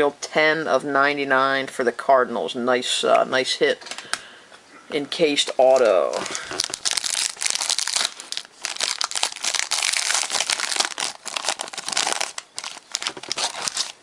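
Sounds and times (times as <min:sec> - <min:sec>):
foil wrapper crinkling and tearing: 0:05.7 - 0:14.0.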